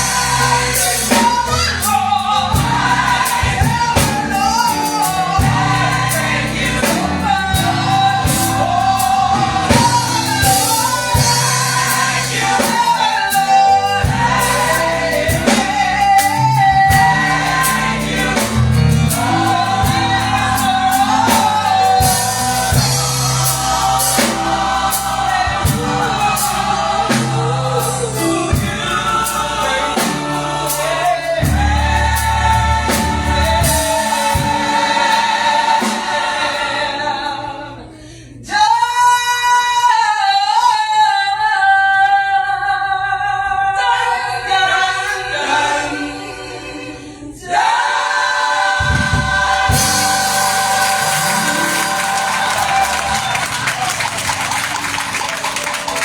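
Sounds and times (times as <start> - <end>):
band with bass and drums: 0.0 - 35.1, 48.8 - 56.0
choir singing gospel: 0.0 - 56.0.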